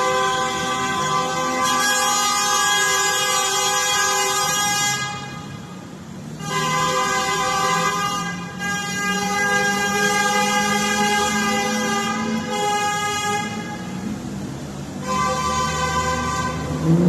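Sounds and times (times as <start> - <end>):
car horns blaring: 0.0 - 17.0.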